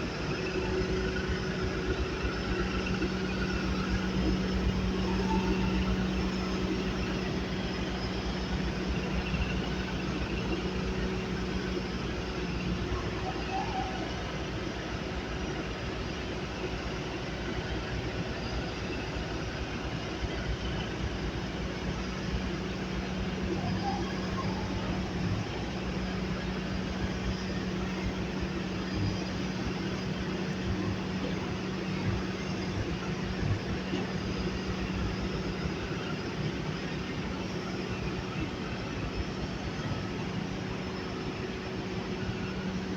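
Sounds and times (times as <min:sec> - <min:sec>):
skid steer engine running: 0:00.0 - 0:42.9.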